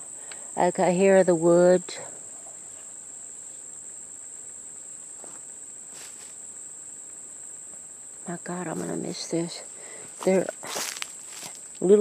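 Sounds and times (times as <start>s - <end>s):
insects buzzing: 0.0s - 12.0s
faint rustles or footfalls: 5.0s - 6.4s, 8.6s - 12.0s.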